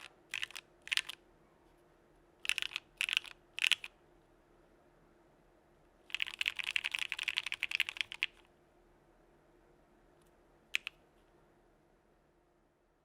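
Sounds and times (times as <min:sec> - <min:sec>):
fast typing on mechanical keyboard: 0:00.0 - 0:01.2, 0:02.4 - 0:03.9, 0:06.1 - 0:08.4.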